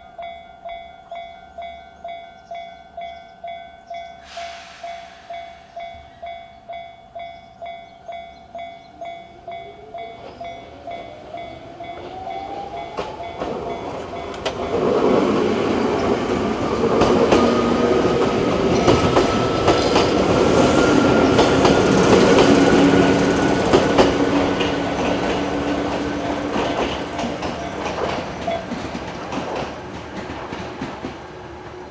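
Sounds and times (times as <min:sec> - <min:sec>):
level crossing alarm ringing: 0:00.0 - 0:14.9
electric train whine: 0:03.0 - 0:31.9
train wheels clattering on rails: 0:04.2 - 0:31.9.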